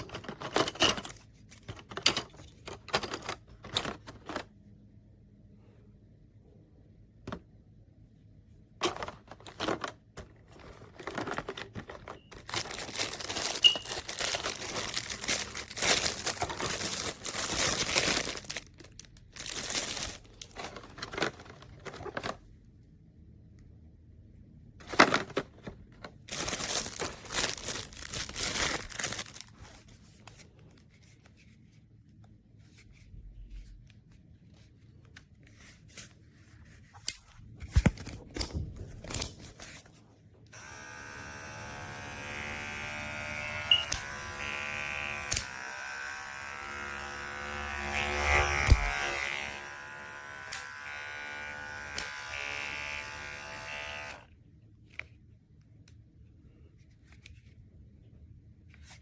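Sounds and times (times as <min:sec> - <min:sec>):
rustling and handling noises: 0:00.0 - 0:23.1, 0:24.2 - 0:40.6, 0:54.1 - 0:59.0
electric dog clippers running: 0:40.6 - 0:54.3.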